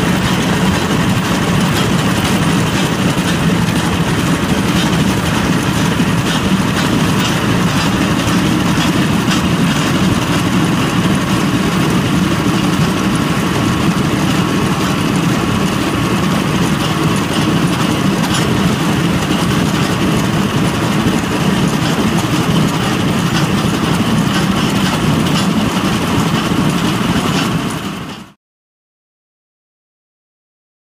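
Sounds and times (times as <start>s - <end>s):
engine drone: 0.0s - 28.4s.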